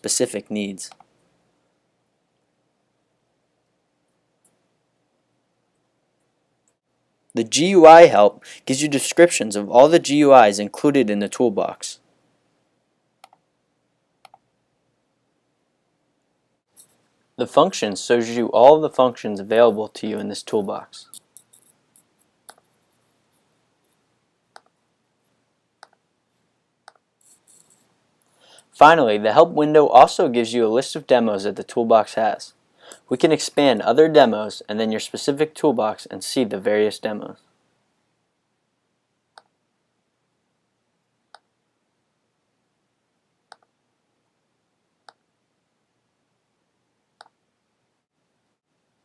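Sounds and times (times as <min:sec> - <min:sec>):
computer mouse clicks: 0:13.2 - 0:13.4, 0:14.2 - 0:14.4, 0:25.8 - 0:26.0, 0:43.5 - 0:43.7.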